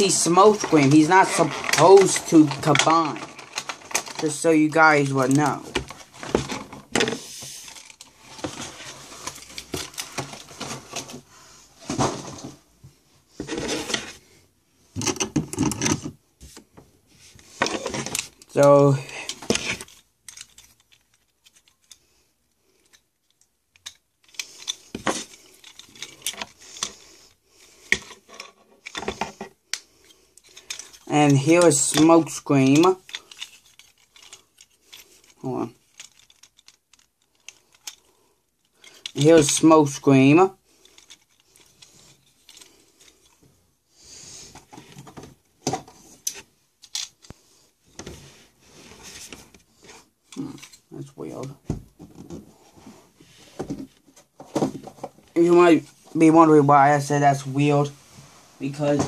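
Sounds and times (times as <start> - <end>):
plastic toy clicks and clatter: 0.1 - 6.0, 19.2 - 22.0, 22.8 - 27.0, 30.4 - 40.0
plastic rustle: 0.1 - 12.6.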